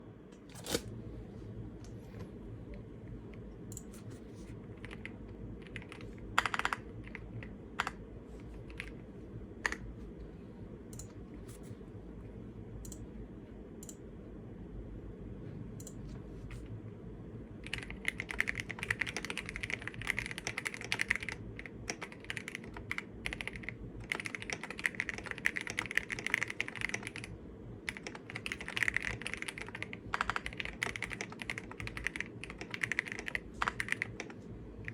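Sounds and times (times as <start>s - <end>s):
low steady hum: 0.0s - 34.9s
mechanical keyboard typing: 4.8s - 8.0s, 8.6s - 9.0s, 17.6s - 34.9s.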